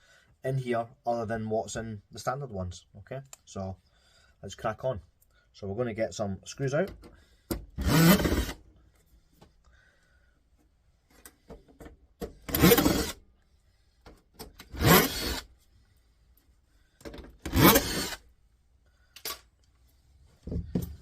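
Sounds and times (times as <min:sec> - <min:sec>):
cordless drill removing screws: 0:07.5 - 0:08.6, 0:12.3 - 0:13.2, 0:14.4 - 0:15.5, 0:17.0 - 0:18.2.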